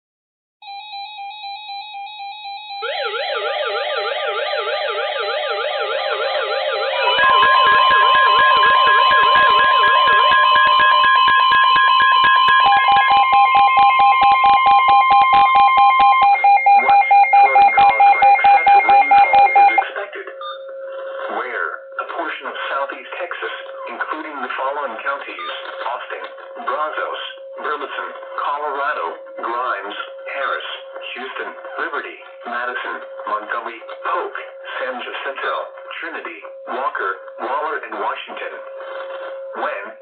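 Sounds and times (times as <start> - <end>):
two-tone warble: 0.6 - 21.4
steady high alert tones: 0.6 - 40.0
fast sweeping siren tone: 2.2 - 19.8
rapid pulsing beeps: 4.2 - 20.7.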